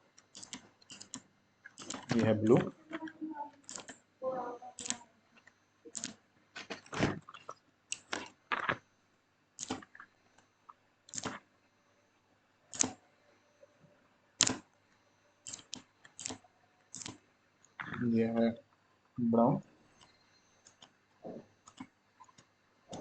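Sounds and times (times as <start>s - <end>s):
mechanical keyboard clicks: 0.3s - 1.2s, 3.6s - 4.0s, 4.8s - 5.0s, 5.9s - 6.2s, 9.6s - 9.8s, 11.1s - 11.4s, 12.7s - 13.0s, 14.4s - 14.6s, 15.4s - 17.2s.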